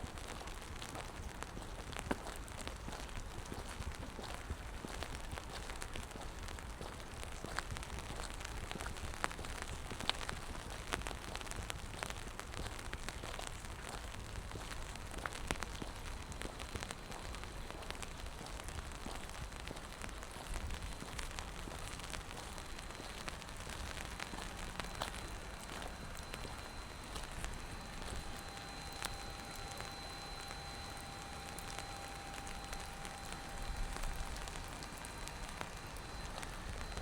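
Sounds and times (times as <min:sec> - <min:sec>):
rain on wet pavement: 0:00.0 - 0:37.0.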